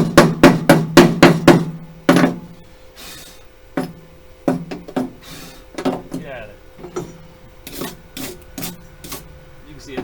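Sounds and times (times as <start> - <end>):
metal scrape: 3.0 - 3.4, 7.6 - 9.4.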